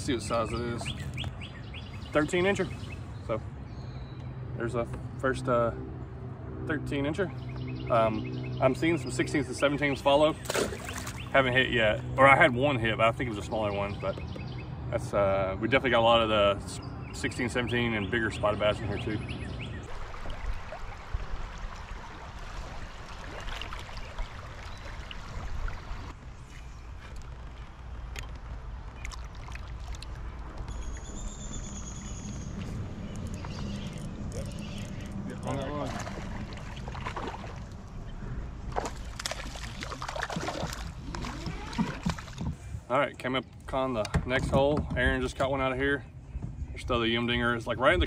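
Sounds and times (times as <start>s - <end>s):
water sloshing around kayak: 10.3s - 11.4s, 19.3s - 42.9s.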